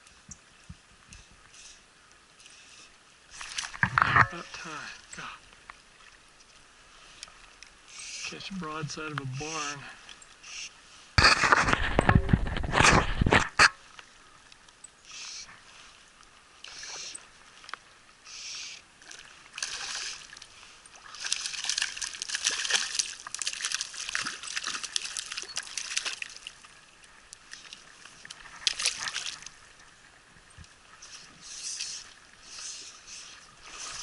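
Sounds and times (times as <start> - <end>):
water splashing and sloshing: 0.0 - 34.0.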